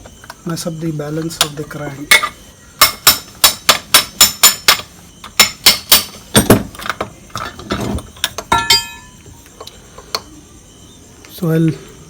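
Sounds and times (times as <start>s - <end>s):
sharp metallic taps: 1.2s - 6.6s.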